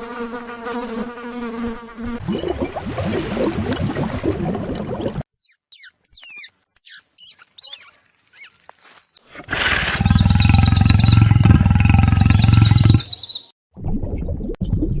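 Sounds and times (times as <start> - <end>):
breathy intake: 9.3 - 13.0
large animal roaring: 9.3 - 13.1
high falling chirps: 9.4 - 13.2.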